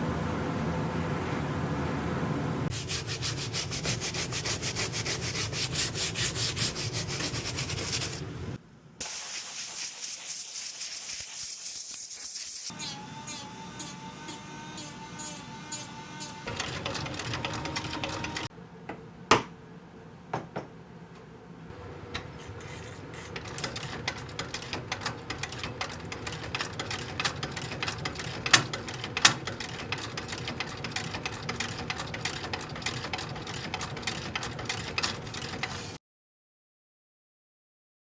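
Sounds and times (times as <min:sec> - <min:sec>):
sewing machine stitching: 0:12.7 - 0:18.5, 0:21.7 - 0:36.0.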